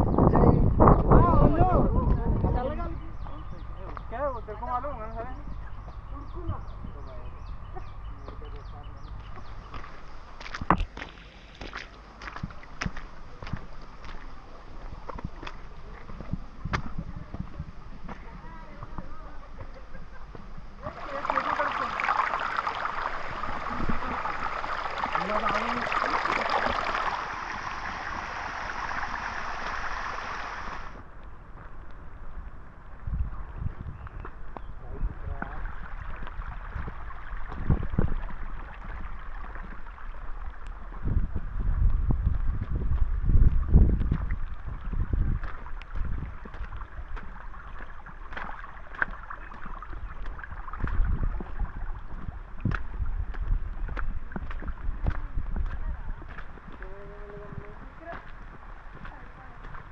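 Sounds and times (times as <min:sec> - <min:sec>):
wind buffeting microphone: 0:00.0 - 0:11.0, 0:12.1 - 0:59.9
water trickling: 0:08.5 - 0:31.0, 0:34.9 - 0:59.9
rainwater rushing down stone steps: 0:20.7 - 0:31.0, 0:35.4 - 0:59.9.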